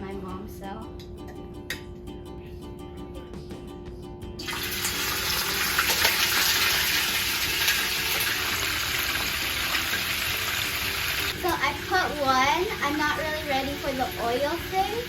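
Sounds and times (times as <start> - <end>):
fish sizzling in hot oil: 4.4 - 15.0.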